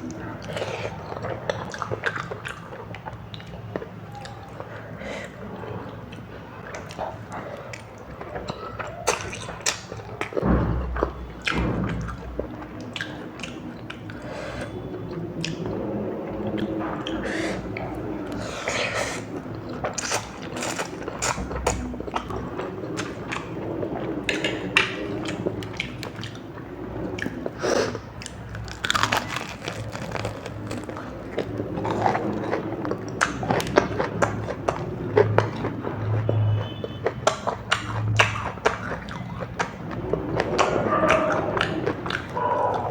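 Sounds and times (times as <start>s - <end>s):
person chewing food: 0.0s - 26.4s, 27.0s - 42.9s
low thud: 10.4s - 12.6s.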